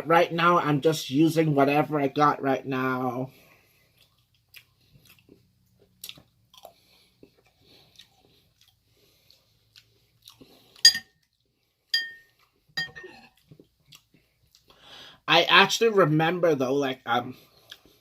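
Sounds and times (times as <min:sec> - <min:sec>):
person chewing: 0:03.4 - 0:14.9, 0:17.4 - 0:18.0
utensil clinking against dish: 0:10.9 - 0:11.1, 0:12.0 - 0:13.1.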